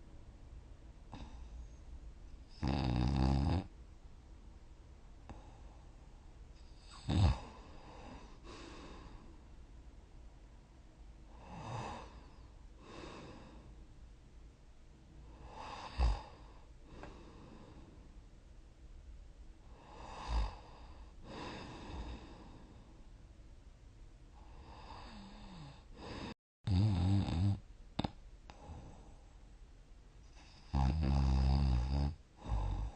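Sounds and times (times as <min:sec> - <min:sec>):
person snoring: 0:02.6 - 0:03.7, 0:06.8 - 0:09.3, 0:11.3 - 0:13.6, 0:15.4 - 0:17.8, 0:19.8 - 0:22.8, 0:24.5 - 0:29.1, 0:30.4 - 0:32.9
soft breath: 0:05.2 - 0:06.8, 0:07.4 - 0:09.6, 0:11.2 - 0:13.9, 0:15.2 - 0:18.2, 0:19.6 - 0:23.2, 0:24.4 - 0:26.4, 0:28.5 - 0:29.5.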